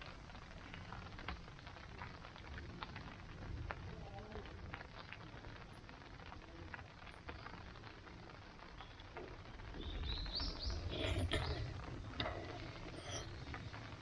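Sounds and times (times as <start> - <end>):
small bird chirping: 9.8 - 11.7.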